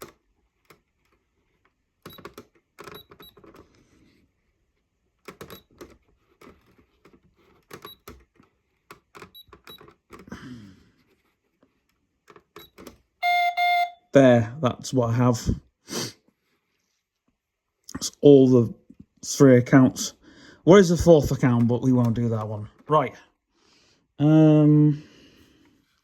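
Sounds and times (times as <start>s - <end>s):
short high beeps: 13.2s - 14.1s.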